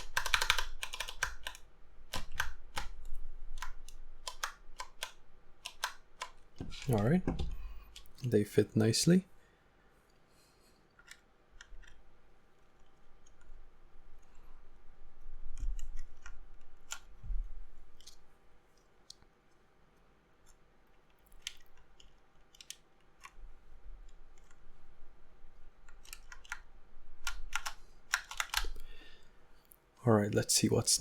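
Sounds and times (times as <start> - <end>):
plastic keycaps clicking: 0.0 - 6.8, 25.9 - 28.8
keyboard bumps: 6.6 - 7.6.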